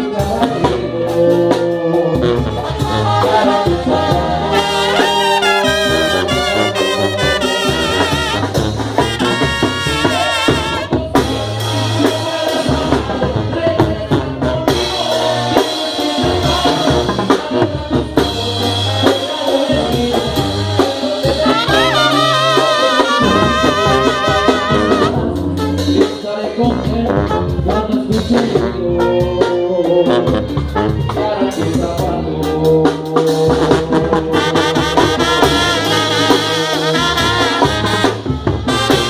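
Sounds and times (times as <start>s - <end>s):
bass line: 0.0s - 39.0s
brass band melody: 0.0s - 39.0s
drums: 0.0s - 39.0s.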